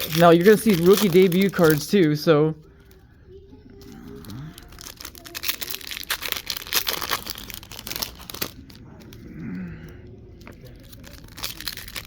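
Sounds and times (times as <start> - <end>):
cards being handled: 0.0 - 2.2
card pack wrappers crinkling: 0.0 - 3.0, 3.8 - 9.3, 10.2 - 12.0.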